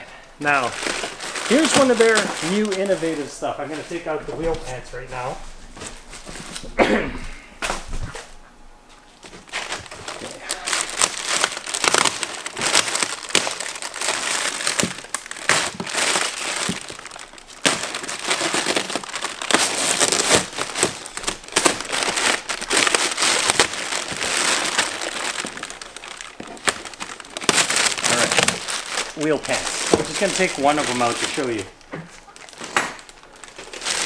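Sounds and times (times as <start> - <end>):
plastic packaging crinkling: 0.0 - 6.8, 7.6 - 34.0.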